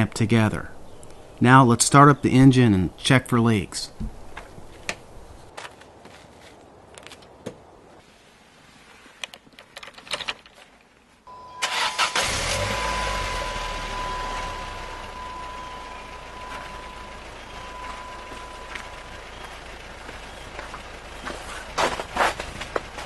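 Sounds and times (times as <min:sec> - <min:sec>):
steady high tone: 0:11.3 - 0:19.6
car engine cranking and idling: 0:11.3 - 0:23.0.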